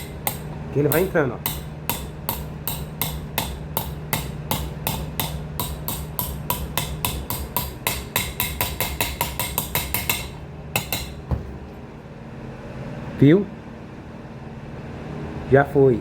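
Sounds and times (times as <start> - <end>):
hammer tapping a bearing: 0.0 - 11.5.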